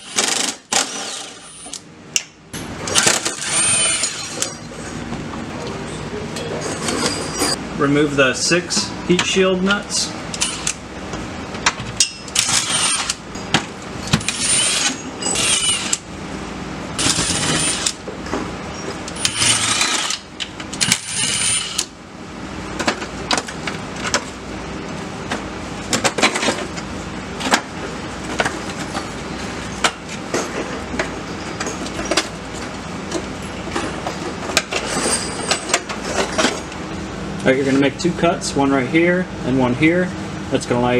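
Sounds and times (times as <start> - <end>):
power tool bursts: 12.4 - 13.2, 14.2 - 16.0, 19.2 - 20.2, 20.8 - 21.8.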